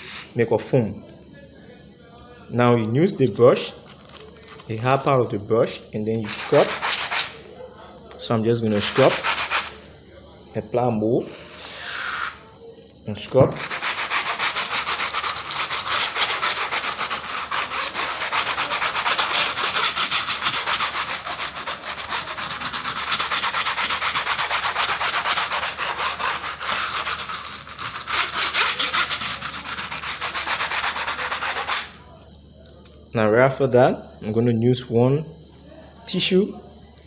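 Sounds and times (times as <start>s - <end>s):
brush scrubbing laptop casing: 6.2s - 7.5s, 8.7s - 9.8s, 13.5s - 32.0s.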